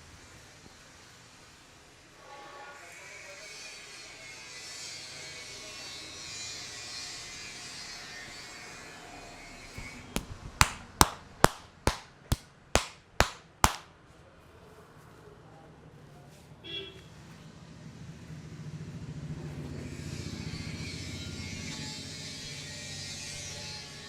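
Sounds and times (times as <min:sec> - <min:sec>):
hands slapping a head: 0:09.8 - 0:13.8
soft taps: 0:09.8 - 0:13.8.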